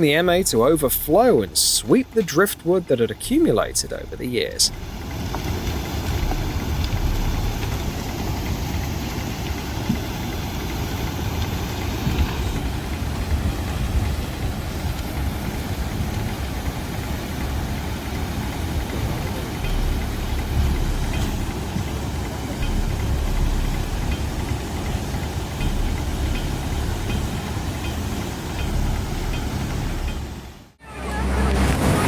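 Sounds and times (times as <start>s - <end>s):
flooding river rumble: 0.0s - 32.0s.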